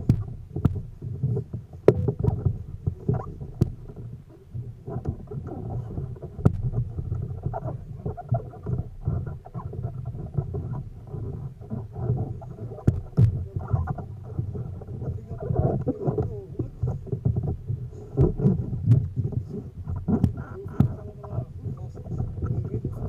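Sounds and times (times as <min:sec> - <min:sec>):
water sloshing around kayak: 0:00.0 - 0:23.0
sharp knocks: 0:01.8 - 0:04.0, 0:06.4 - 0:06.9.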